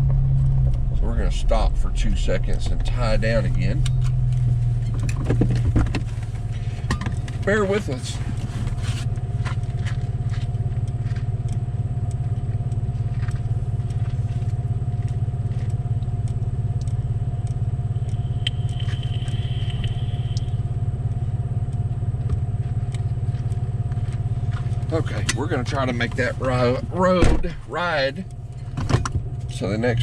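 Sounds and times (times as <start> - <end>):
pickup truck engine rumble: 0.0 - 30.0
light ticks: 6.0 - 27.1.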